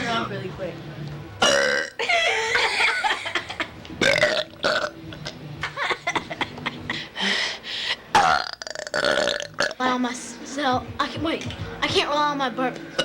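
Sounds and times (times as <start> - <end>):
person belching: 1.4 - 2.0, 4.0 - 5.4, 8.1 - 9.8.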